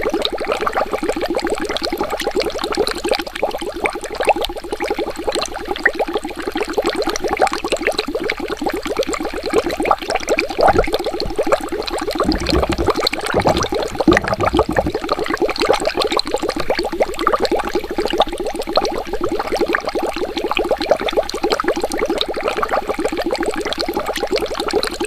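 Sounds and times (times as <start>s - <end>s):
water bubbling: 10.6s - 15.4s
low thumps: 12.2s - 15.0s.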